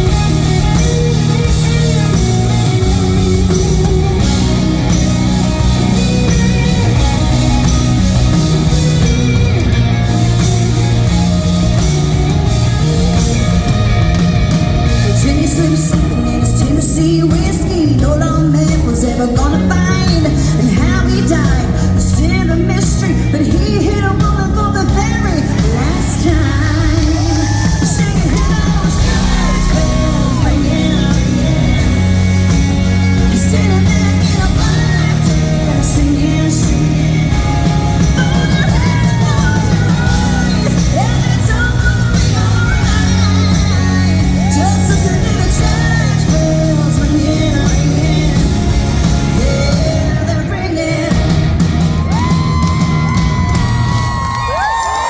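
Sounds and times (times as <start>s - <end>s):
crowd yelling and cheering: 0.0s - 55.0s
live band music: 0.0s - 55.0s
woman singing: 14.5s - 55.0s
crowd yelling: 25.1s - 46.6s, 50.8s - 55.0s.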